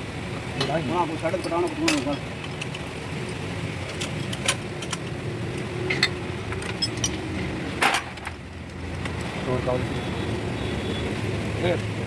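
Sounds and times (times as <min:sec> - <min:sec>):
sharp metallic clinks: 0:05.9 - 0:07.2.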